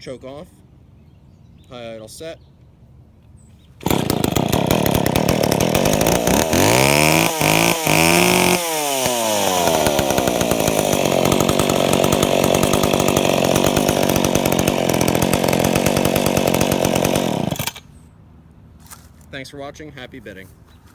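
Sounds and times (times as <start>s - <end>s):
chainsaw engine starting and revving: 3.8s - 17.9s.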